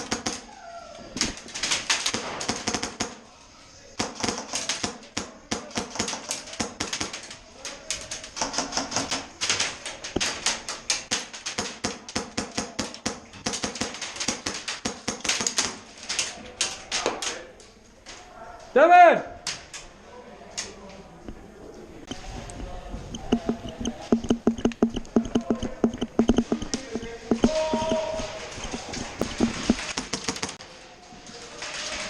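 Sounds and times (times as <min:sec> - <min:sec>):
airsoft guns rapid-fire clacks: 0:01.2 - 0:03.2, 0:04.0 - 0:17.3, 0:23.2 - 0:30.6.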